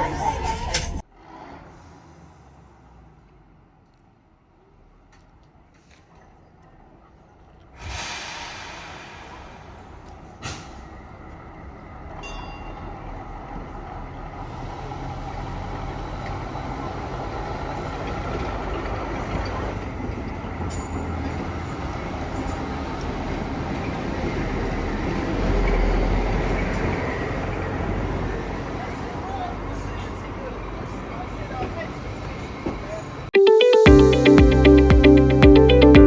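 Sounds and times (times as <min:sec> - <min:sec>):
diesel train engine rumble: 0:00.0 - 0:03.6, 0:04.6 - 0:33.3
train wheel noise: 0:12.8 - 0:33.3.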